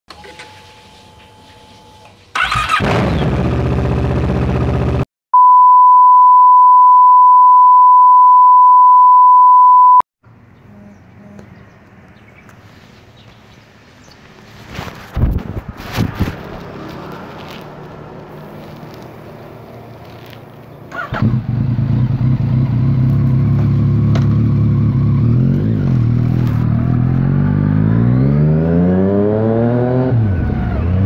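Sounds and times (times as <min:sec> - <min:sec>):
motorcycle engine running: 0:02.4 - 0:05.0, 0:21.0 - 0:27.2
high beep tone: 0:05.4 - 0:10.0.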